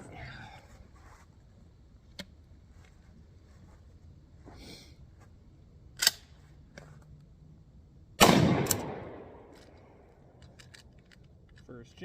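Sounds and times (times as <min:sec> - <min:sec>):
shotgun blast: 0:08.2 - 0:09.5.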